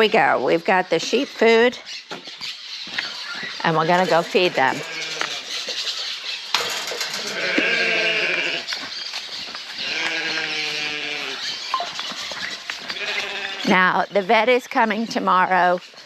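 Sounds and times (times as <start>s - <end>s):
sheep bleating: 4.4s - 5.5s, 7.2s - 8.8s, 9.8s - 11.5s, 12.9s - 13.8s.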